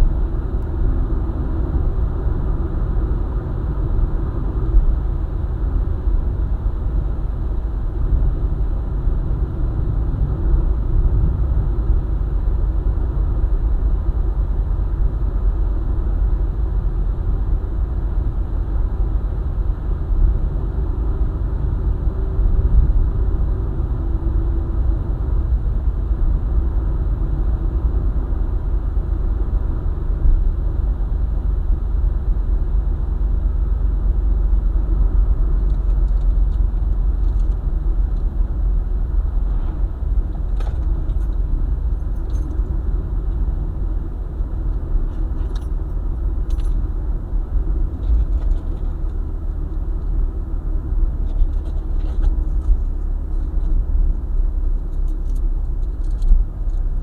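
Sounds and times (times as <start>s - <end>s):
engine and tyre rumble: 0.0s - 57.0s
light clicks and rattles: 54.8s - 57.0s.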